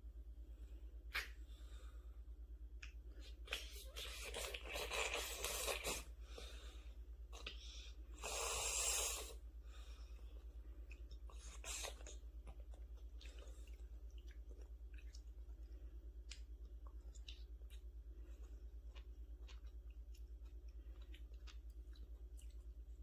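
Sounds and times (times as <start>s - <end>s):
steady low hum: 0.0s - 23.0s
child chewing: 2.8s - 6.7s, 10.1s - 23.0s
wet mouth clicks and smacks: 14.0s - 17.9s.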